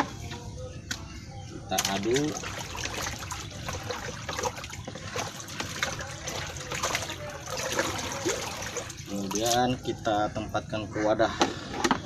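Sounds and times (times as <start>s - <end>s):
water sloshing while stirred: 1.7s - 9.8s.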